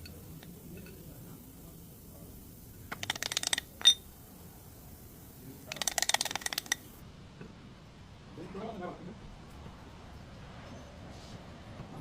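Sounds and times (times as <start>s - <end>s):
rapid metallic clicking: 0.0s - 7.0s
sharp ringing metal clink: 3.4s - 4.1s.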